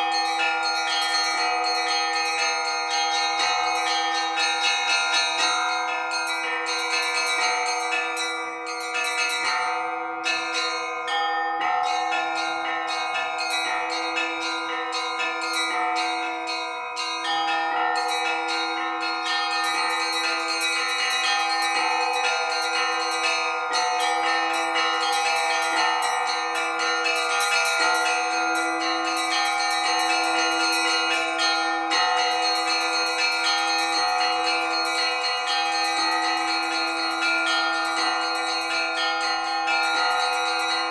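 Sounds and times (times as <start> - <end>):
small bells ringing quickly: 0.0 - 40.9.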